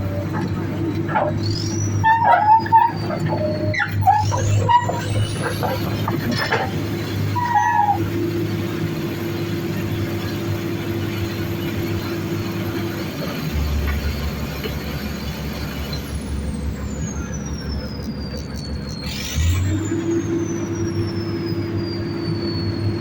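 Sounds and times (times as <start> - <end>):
deep engine rumble under load: 0.0 - 23.0
diesel engines running: 0.0 - 23.0
falling metallic squeal: 1.2 - 8.6, 15.2 - 23.0.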